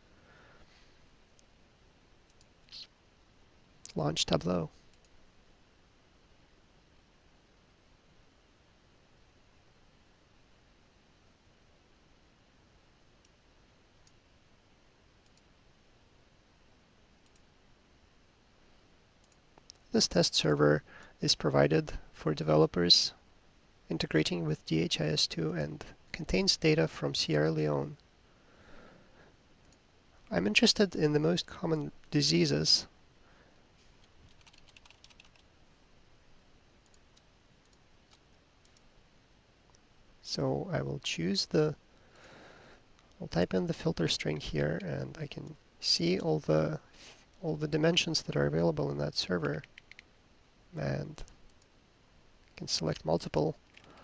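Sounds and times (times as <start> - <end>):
low hiss: 0.0 - 54.0
computer mouse clicks: 34.0 - 35.5, 49.6 - 50.1, 53.6 - 54.0
keyboard typing: 34.0 - 35.5, 49.5 - 50.1, 53.0 - 54.0.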